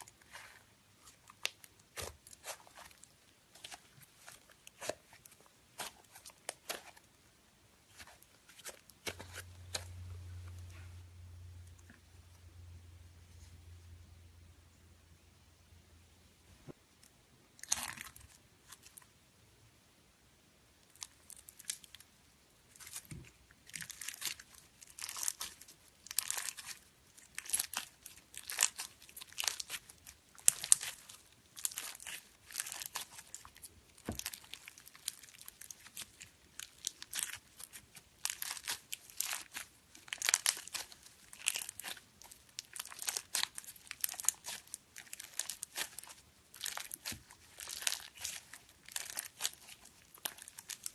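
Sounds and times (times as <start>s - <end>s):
slime squishing and crackling: 0.0s - 7.1s, 17.6s - 19.0s, 20.8s - 22.0s, 22.6s - 50.9s.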